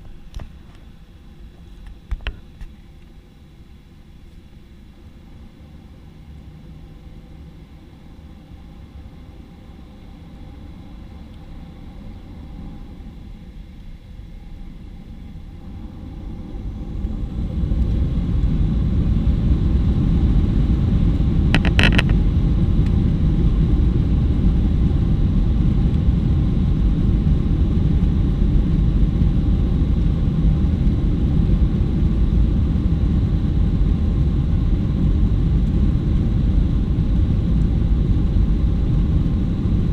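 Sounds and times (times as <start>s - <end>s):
jet engines rumbling from cabin: 0.0s - 39.9s.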